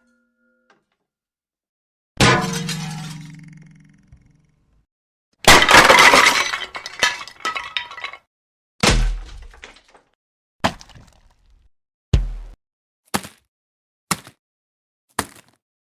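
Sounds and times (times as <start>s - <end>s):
objects crashing and clattering: 2.2s - 3.3s, 5.5s - 10.1s
dull low thud: 12.2s - 12.6s.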